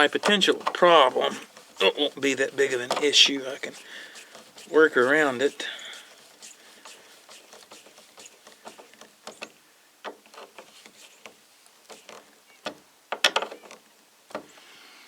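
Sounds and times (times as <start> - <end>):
latch clicks and taps: 2.8 - 3.2, 8.8 - 14.5.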